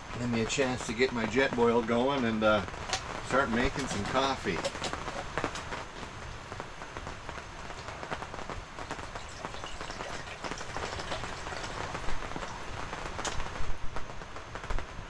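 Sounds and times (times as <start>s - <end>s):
drizzle pattering and dripping: 2.9s - 13.4s.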